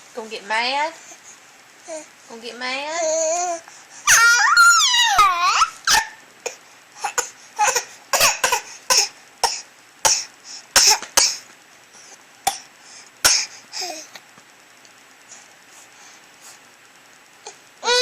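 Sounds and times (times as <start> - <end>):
baby making cough-like noises: 5.9 - 11.4, 12.5 - 13.6.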